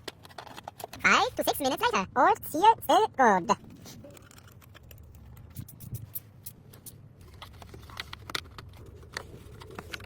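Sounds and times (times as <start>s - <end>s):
small parts and tools clicking: 0.0s - 1.0s, 4.0s - 10.0s.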